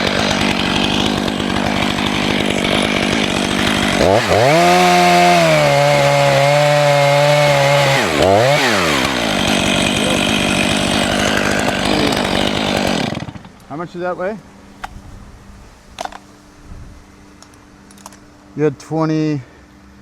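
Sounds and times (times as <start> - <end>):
chainsaw idling and revving: 0.0 - 13.8.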